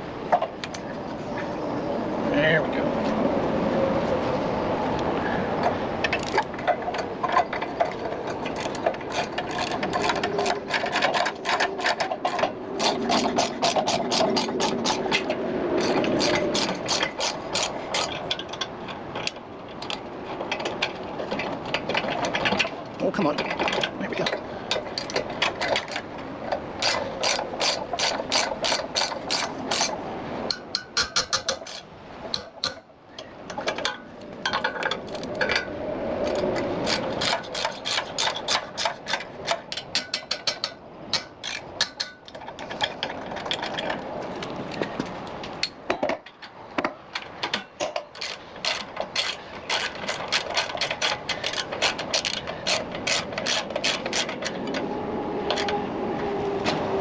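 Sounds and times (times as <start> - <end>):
ratchet wrench clicking: 48.2 - 54.3.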